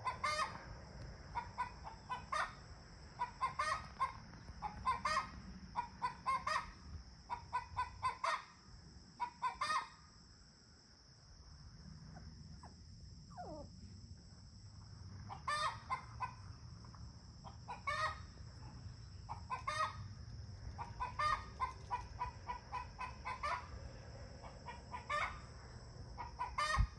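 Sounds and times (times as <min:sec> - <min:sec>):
chickens squawking and clucking: 0:00.0 - 0:00.7, 0:01.3 - 0:08.6, 0:09.2 - 0:10.0, 0:15.3 - 0:16.6, 0:17.4 - 0:26.9.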